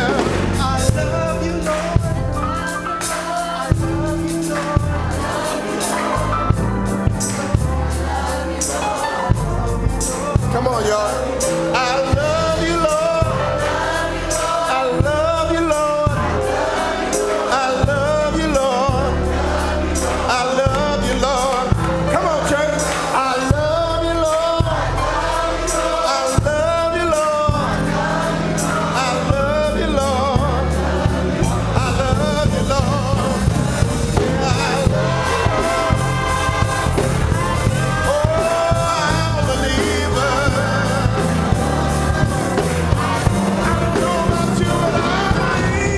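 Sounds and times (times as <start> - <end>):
bass and drums: 0.0 - 2.8, 3.7 - 5.5, 6.1 - 8.3, 9.3 - 11.3, 26.4 - 45.9
gospel choir singing: 0.0 - 45.9.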